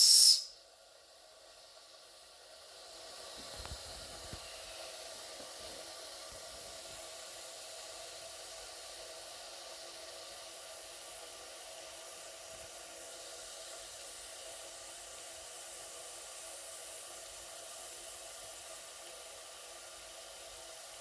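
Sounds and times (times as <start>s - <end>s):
steam hissing: 0.0s - 0.6s.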